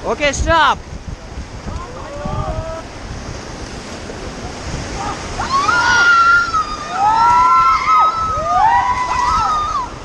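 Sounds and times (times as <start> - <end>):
rushing white-water river: 0.0 - 10.0
people whooping: 5.0 - 10.0.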